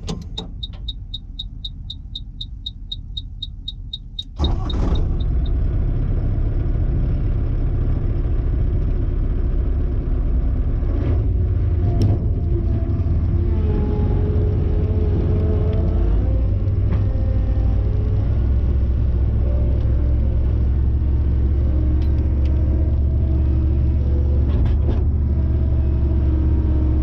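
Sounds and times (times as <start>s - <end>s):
high electronic beeps: 0.4s - 5.5s.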